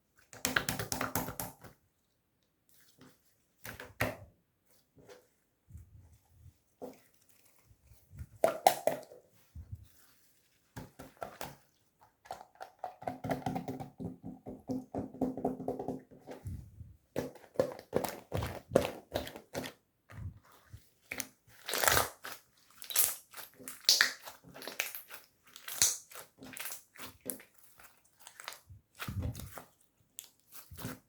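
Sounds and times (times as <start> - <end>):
slime squishing with wet clicks: 18.0 - 31.0.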